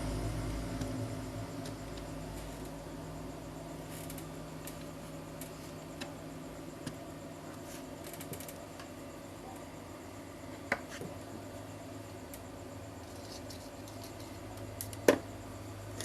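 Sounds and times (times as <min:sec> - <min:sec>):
steady low hum: 0:00.0 - 0:16.0
small clicks and ticks: 0:08.0 - 0:08.9, 0:12.2 - 0:15.0.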